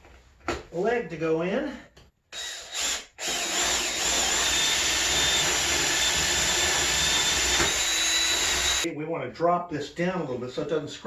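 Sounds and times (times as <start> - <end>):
power tool cutting wood: 2.4 - 8.9.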